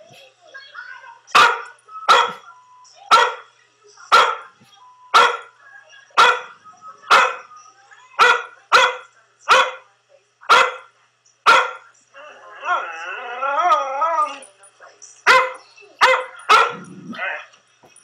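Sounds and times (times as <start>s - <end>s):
dog barking: 1.4s - 2.4s, 3.1s - 3.5s, 4.1s - 4.5s, 5.1s - 5.6s, 6.2s - 7.5s, 8.2s - 9.9s, 10.5s - 10.9s, 11.5s - 11.9s, 15.3s - 16.9s.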